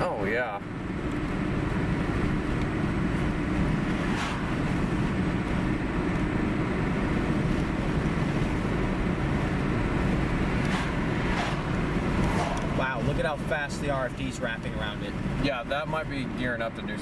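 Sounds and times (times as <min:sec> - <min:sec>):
car road and engine noise: 0:00.0 - 0:17.0
brief swish: 0:04.0 - 0:04.8, 0:10.6 - 0:12.8.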